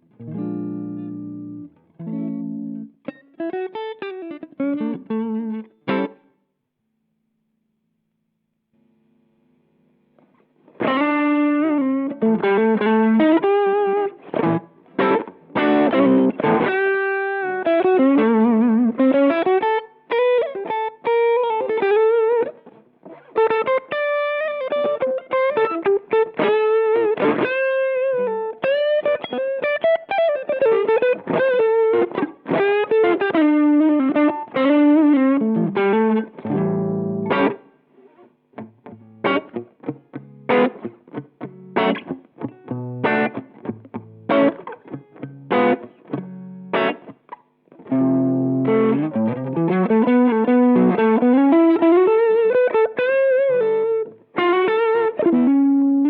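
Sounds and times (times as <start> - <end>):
overdriven electric guitar lead: 0.0 - 6.2, 10.2 - 56.0
guitar chord ringing: 10.8 - 37.6, 38.6 - 47.1, 47.7 - 56.0.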